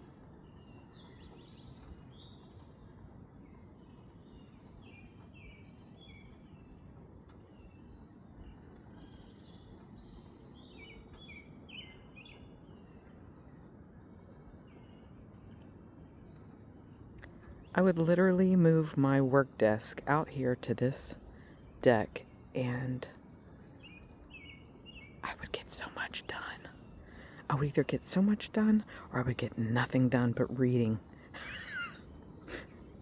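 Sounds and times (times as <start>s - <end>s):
low background hum: 0.0s - 33.0s
crickets trilling: 0.1s - 33.0s
birds chirping: 13.7s - 33.0s.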